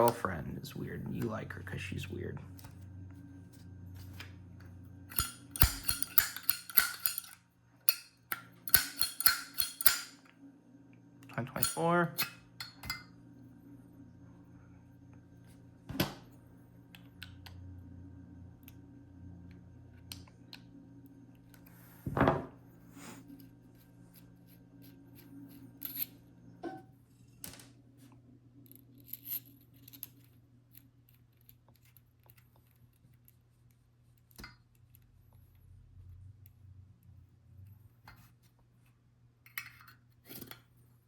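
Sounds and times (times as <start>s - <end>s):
faint steady hum: 0.0s - 41.0s
metal lighters clicking and tapping: 5.1s - 10.2s.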